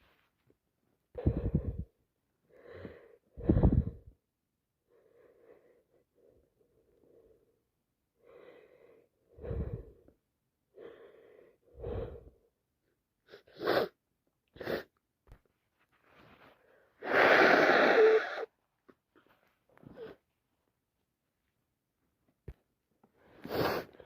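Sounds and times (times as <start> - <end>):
wheezy in-breaths: 16.2 - 18.5, 23.2 - 24.0
person sneezing: 17.0 - 18.5.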